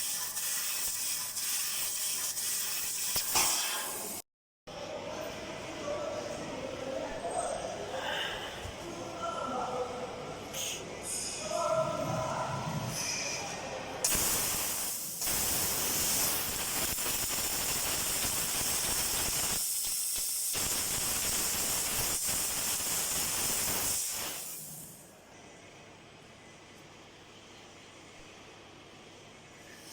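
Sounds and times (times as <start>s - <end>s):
laser cutter gas jet hissing: 0.0s - 4.2s, 14.0s - 25.0s.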